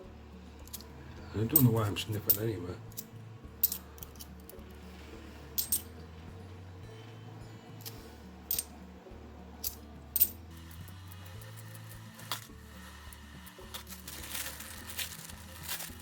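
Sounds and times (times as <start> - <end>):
quiet background music: 0.0 - 16.0
coins clinking: 0.6 - 0.9, 1.5 - 4.7, 5.5 - 6.0, 7.8 - 8.7, 9.6 - 16.0.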